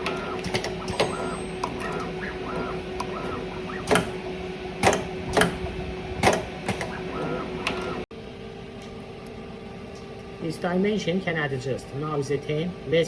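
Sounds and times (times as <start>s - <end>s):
loud sharp mechanical clacks: 0.0s - 8.0s
machine motor hum: 0.0s - 8.1s
short machine whines: 0.0s - 8.1s.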